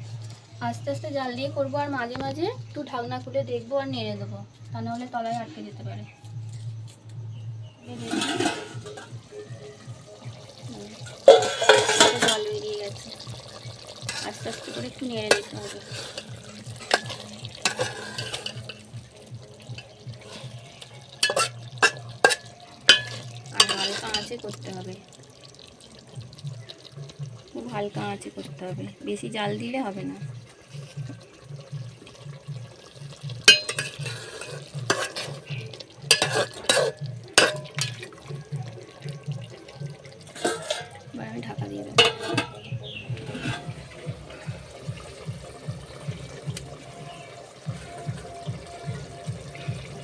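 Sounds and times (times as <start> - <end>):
utensil clinking against pot: 8.0 - 9.2, 11.0 - 24.7, 32.3 - 41.1, 41.9 - 44.5
wet sloshing stir: 10.6 - 27.4, 30.3 - 50.0.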